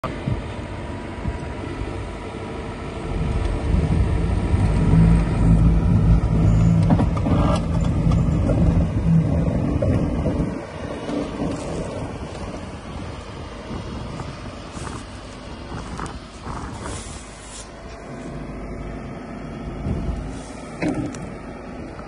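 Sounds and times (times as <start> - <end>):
excavator diesel engine running: 0.0 - 22.0.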